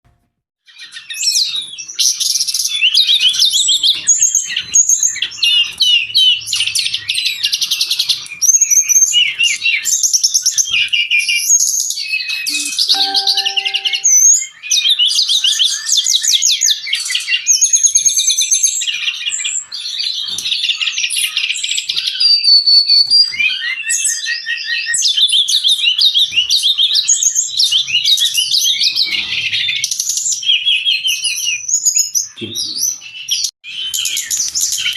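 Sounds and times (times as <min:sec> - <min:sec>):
bird singing trills: 0:12.5 - 0:14.2.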